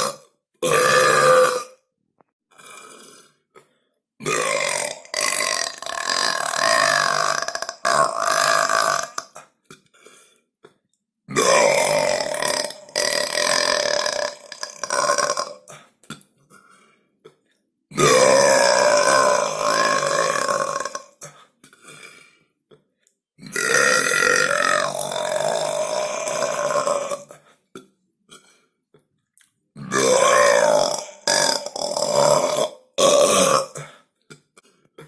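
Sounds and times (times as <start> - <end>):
person burping loudly: 0.0 - 1.8, 2.5 - 3.4, 4.2 - 9.8, 11.3 - 15.9, 17.9 - 22.2, 23.4 - 28.4, 29.8 - 34.8.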